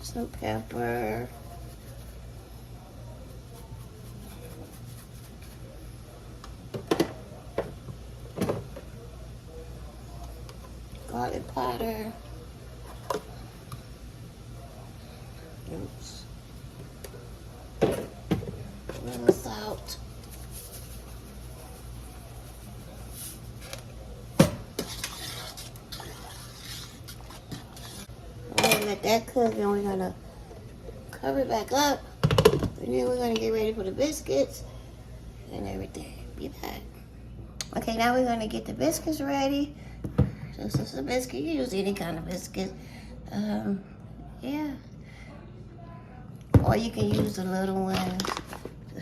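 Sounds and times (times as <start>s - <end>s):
metal spoon scraping a pot: 24.8s - 28.1s.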